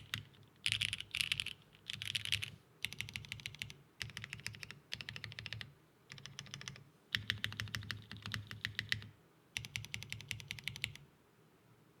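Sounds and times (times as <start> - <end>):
mechanical keyboard typing: 0.0 - 11.0.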